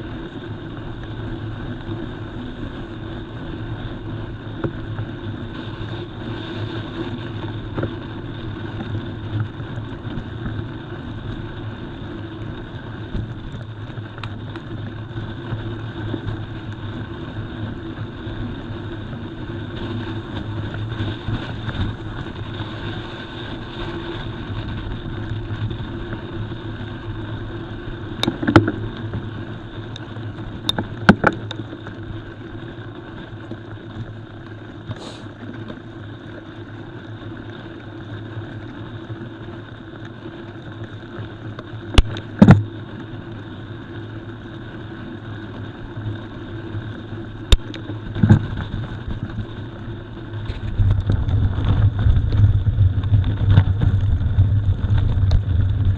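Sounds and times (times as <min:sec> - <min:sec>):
bike tyres rumbling on gravel: 0:00.0 - 0:55.9.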